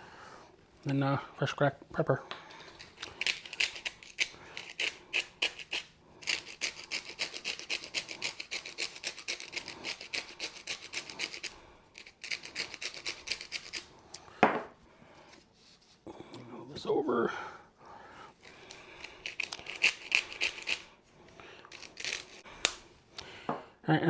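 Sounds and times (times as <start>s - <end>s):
pepper grinder grinding: 2.4s - 14.3s, 18.3s - 22.9s.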